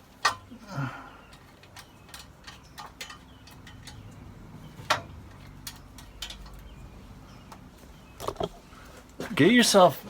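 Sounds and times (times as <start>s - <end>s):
metal parts clicking and tapping: 1.3s - 6.7s.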